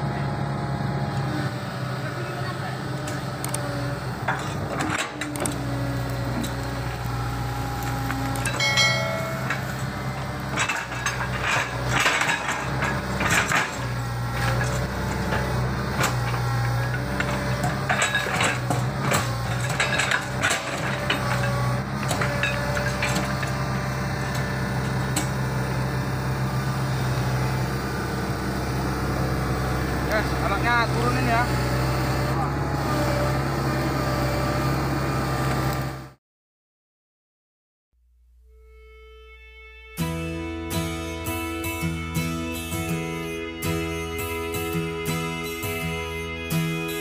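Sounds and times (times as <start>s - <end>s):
excavator diesel engine running: 0.0s - 36.2s, 40.0s - 47.0s
metallic clanks and knocks: 4.2s - 25.5s.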